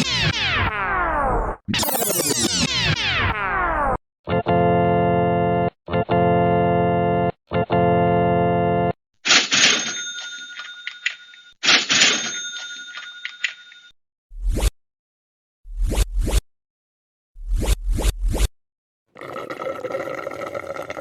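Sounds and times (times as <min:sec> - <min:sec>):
organ-like chords: 0:04.4 - 0:08.9.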